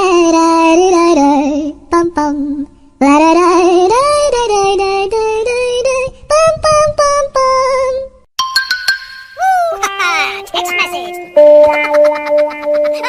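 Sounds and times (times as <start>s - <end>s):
childlike voice singing: 9.4s - 11.4s.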